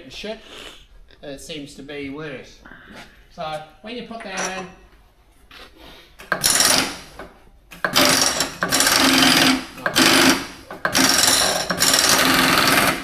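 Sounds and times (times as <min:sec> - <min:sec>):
milling machine drawbar rattling: 0:06.2 - 0:13.0.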